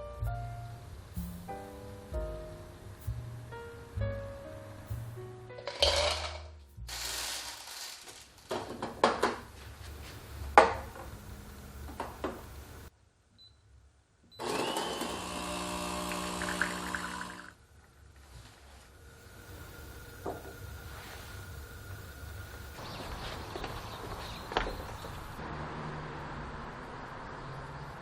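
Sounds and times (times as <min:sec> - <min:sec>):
kitchenware knocks and clicks: 0:08.5 - 0:09.5
kitchen appliance motor running: 0:14.4 - 0:17.6.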